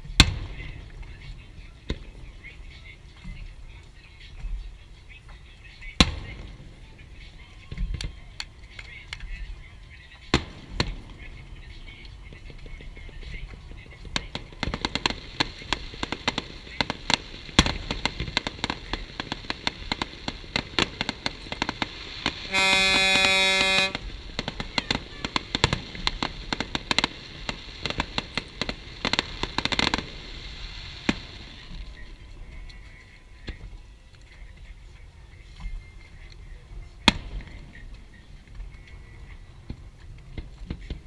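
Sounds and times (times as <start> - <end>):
fireworks bangs and crackles: 0.0 - 4.7, 5.8 - 33.8, 35.6 - 41.0
horn blast: 22.2 - 24.4.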